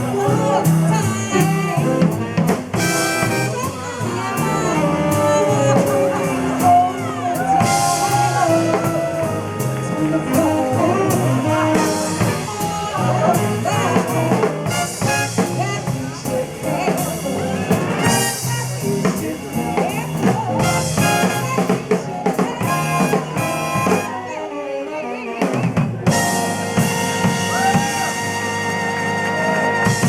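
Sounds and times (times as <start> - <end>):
drum kit beat: 0.0 - 24.3, 25.4 - 30.0
brass horns and saxophone: 0.0 - 30.0.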